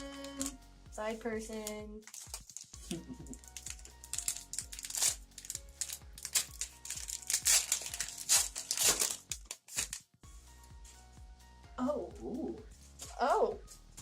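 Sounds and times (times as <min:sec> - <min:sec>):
foil wrapper crinkling: 0:00.0 - 0:00.6, 0:01.6 - 0:10.1
quiet background music: 0:00.0 - 0:14.0.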